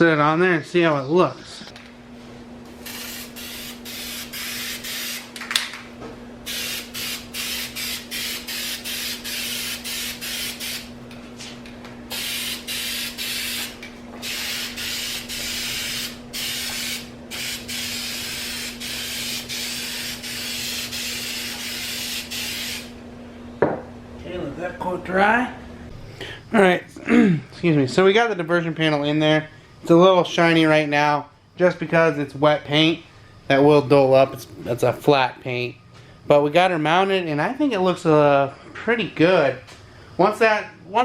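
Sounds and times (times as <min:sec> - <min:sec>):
steady low hum: 0:00.0 - 0:41.0
spray paint hissing: 0:02.8 - 0:05.3, 0:06.5 - 0:10.9, 0:12.1 - 0:22.9.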